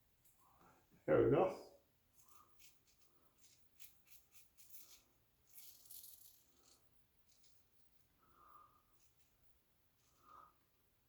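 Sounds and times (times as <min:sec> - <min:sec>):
razor scratching stubble: 0:02.2 - 0:07.5.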